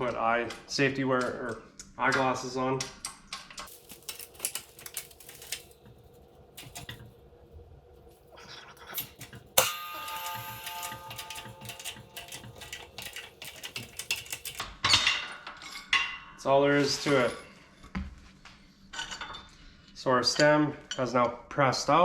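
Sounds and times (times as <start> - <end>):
steel parts ringing: 3.7 - 5.9, 6.6 - 7.1, 8.8 - 15.1
metal clicks and taps: 6.6 - 7.1, 9.0 - 14.7.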